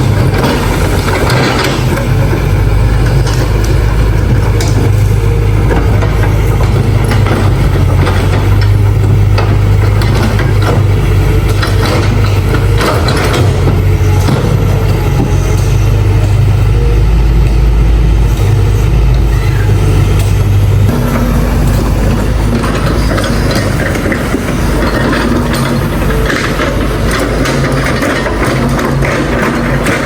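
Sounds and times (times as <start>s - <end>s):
metal clanks and knocks: 0.0s - 16.4s, 20.2s - 30.0s
excavator engine droning: 0.0s - 30.0s.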